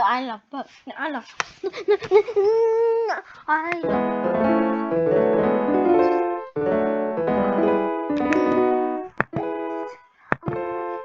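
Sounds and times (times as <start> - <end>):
piano chords: 3.8 - 11.0.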